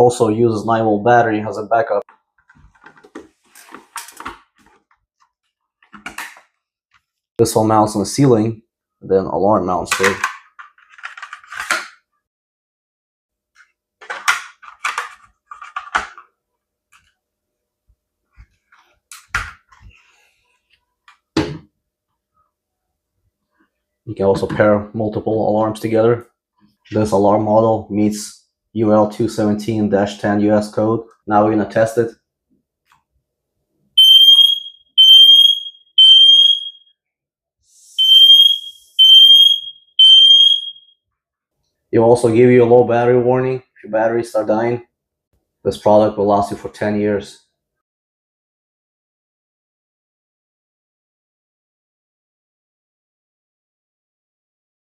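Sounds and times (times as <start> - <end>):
smoke alarm beeping: 34.0 - 36.9, 38.0 - 41.0.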